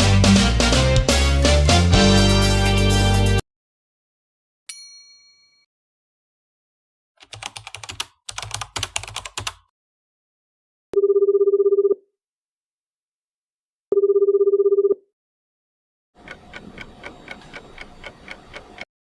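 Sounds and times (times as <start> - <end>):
music: 0.0 - 3.4
bell-like ding: 4.7 - 5.7
keyboard typing: 7.2 - 9.7, 16.2 - 18.9
telephone ringing: 11.0 - 12.0, 13.9 - 15.0.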